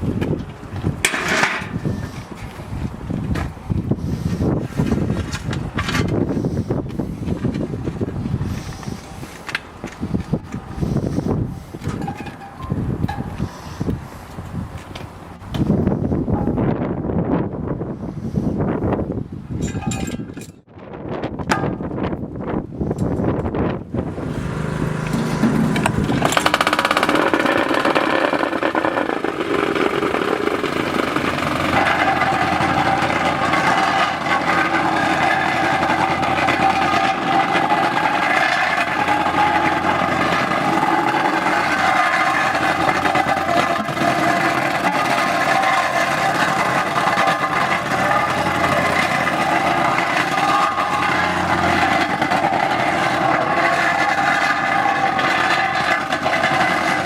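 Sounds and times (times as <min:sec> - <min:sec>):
constant machine whine: 0:00.0 - 0:16.8, 0:21.4 - 0:57.0
motor-driven machine running: 0:24.0 - 0:57.0.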